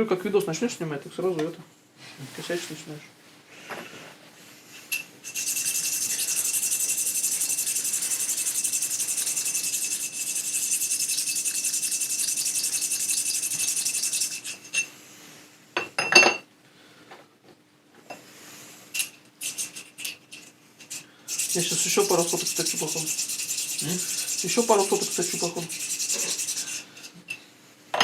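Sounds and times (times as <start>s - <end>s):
metal scraping on abrasive stone: 4.8s - 14.9s, 19.0s - 27.2s.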